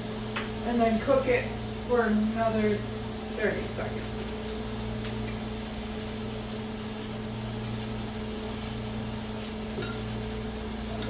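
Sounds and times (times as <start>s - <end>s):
microwave oven humming: 0.0s - 11.0s.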